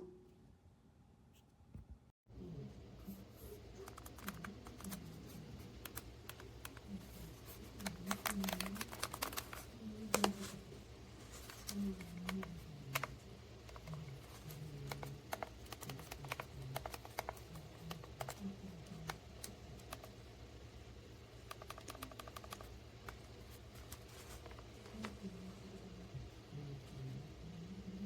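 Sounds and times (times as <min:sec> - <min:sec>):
typing on a keyboard: 0:03.8 - 0:05.0, 0:07.8 - 0:10.4, 0:14.8 - 0:20.1, 0:21.5 - 0:23.2.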